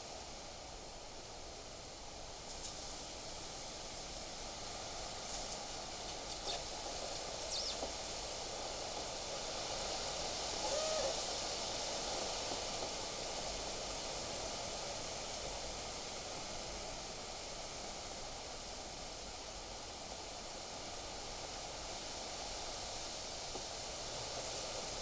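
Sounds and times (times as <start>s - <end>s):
brief high chirp: 10.6s - 11.2s.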